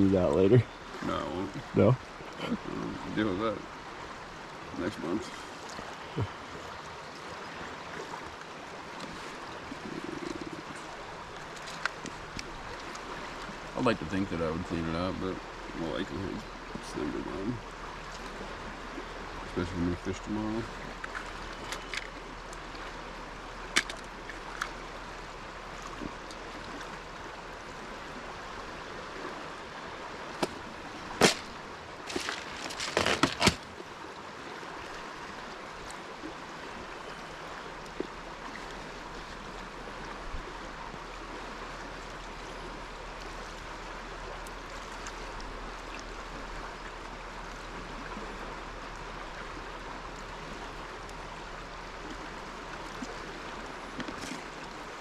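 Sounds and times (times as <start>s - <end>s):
river water running: 0.0s - 55.0s.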